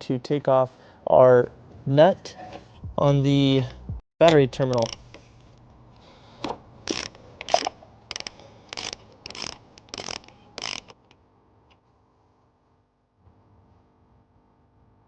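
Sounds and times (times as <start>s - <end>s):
ratchet wrench ratcheting: 4.6s - 5.2s, 6.8s - 11.1s.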